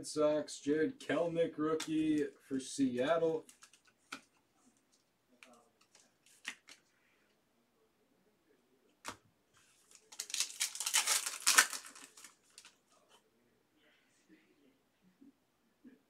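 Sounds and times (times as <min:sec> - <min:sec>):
crinkly rustling: 0:03.4 - 0:06.9, 0:09.6 - 0:13.2
card snapping: 0:05.8 - 0:06.8.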